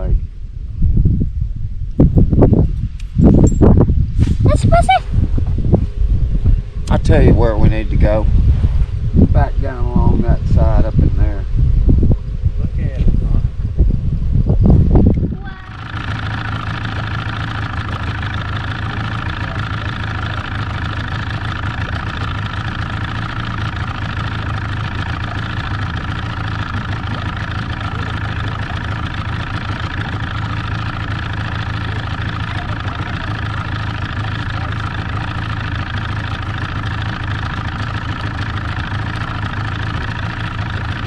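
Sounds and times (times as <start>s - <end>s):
boat motor running: 6.6s - 8.3s, 14.7s - 41.0s.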